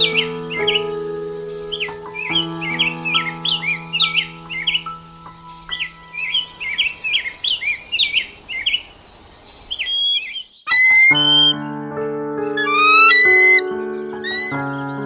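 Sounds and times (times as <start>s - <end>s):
background music: 0.0s - 7.4s, 10.7s - 15.0s
bird chirping: 0.0s - 15.0s.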